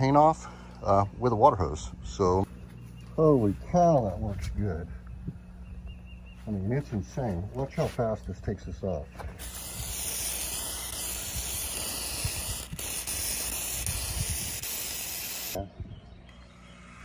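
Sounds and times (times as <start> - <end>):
hose water jet hissing: 9.3 - 15.6.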